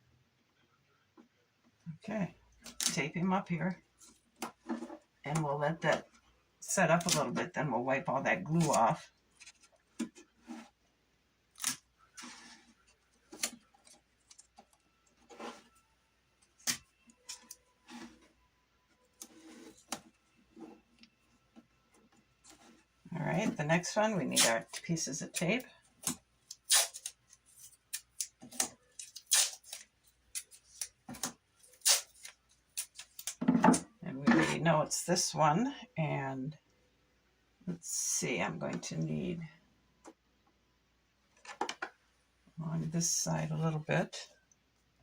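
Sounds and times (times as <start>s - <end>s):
tape being handled: 24.3s - 25.4s, 26.0s - 33.4s.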